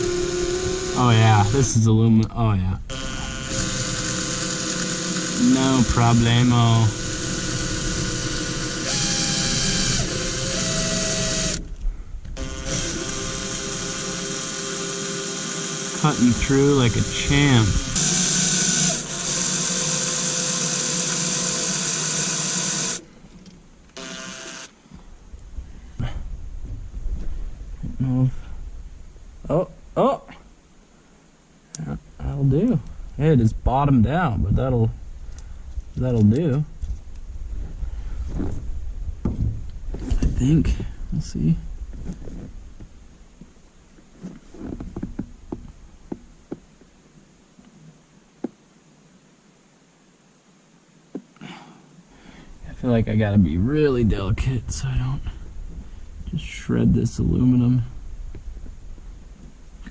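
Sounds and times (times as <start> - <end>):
electric drill drilling into metal: 0.0 - 1.7, 2.9 - 11.7, 12.4 - 23.1, 24.0 - 24.8.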